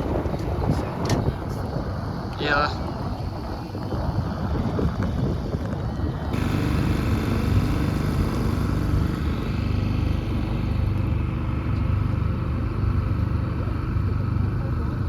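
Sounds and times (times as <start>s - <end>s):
boat engine running: 0.0s - 15.0s.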